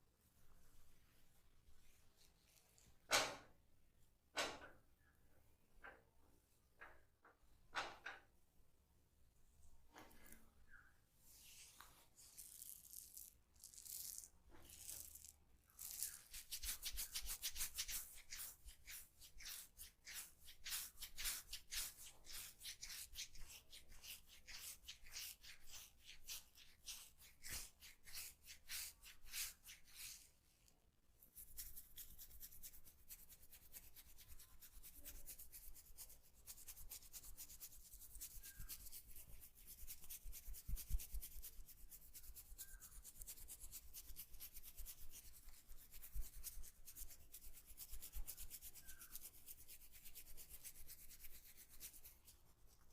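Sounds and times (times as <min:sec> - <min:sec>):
hands rubbing hair and scalp: 0:11.3 - 0:52.9.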